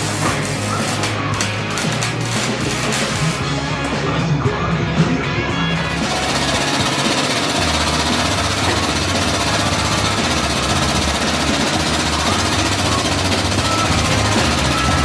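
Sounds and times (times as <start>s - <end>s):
power tool cutting steel: 5.9s - 15.0s.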